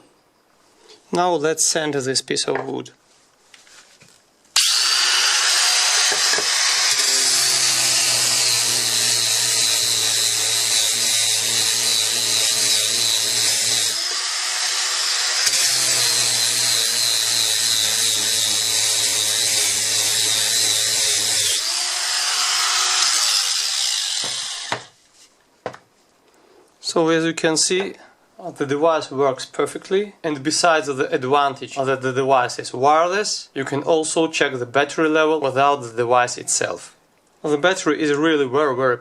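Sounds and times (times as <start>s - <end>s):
angle grinder motor whine: 4.6s - 24.9s
grinder sanding wood: 4.6s - 25.0s.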